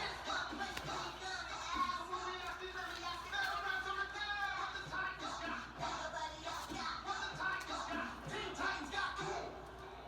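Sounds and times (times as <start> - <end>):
music: 0.0 - 10.0.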